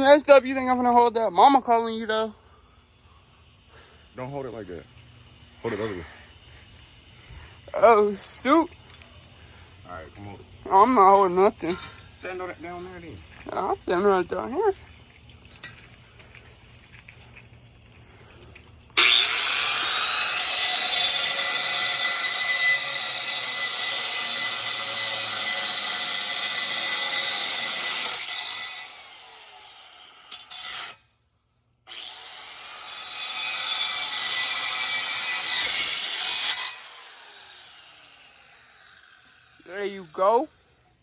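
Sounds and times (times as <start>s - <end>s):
power tool cutting metal: 19.0s - 31.0s, 31.9s - 40.4s.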